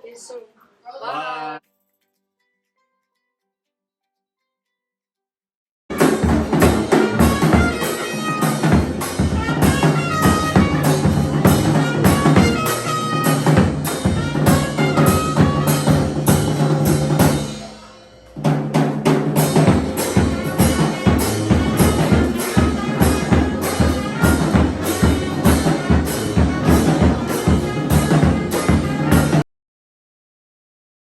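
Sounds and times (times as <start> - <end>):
background music with drum beat: 5.9 - 29.4.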